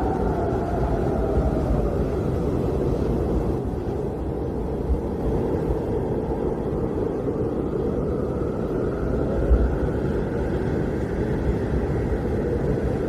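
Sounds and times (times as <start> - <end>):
blizzard wind rushing: 0.0 - 13.0
faint wavering wind whistle: 0.0 - 13.0.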